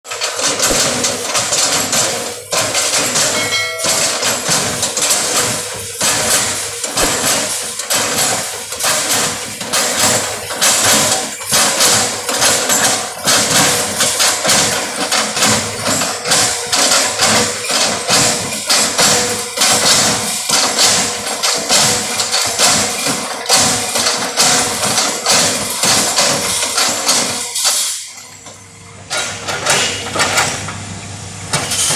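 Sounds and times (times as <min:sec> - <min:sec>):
excavator engine running: 0:00.1 - 0:27.6
knocks and clatter: 0:00.1 - 0:30.8, 0:31.5 - 0:31.9.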